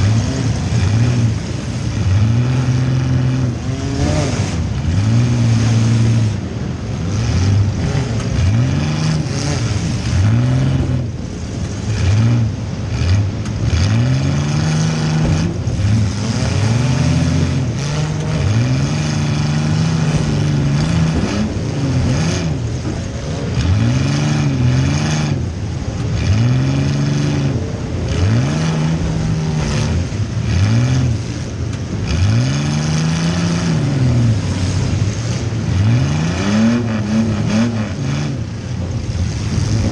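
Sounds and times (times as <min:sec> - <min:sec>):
car engine revving: 0:00.0 - 0:39.9.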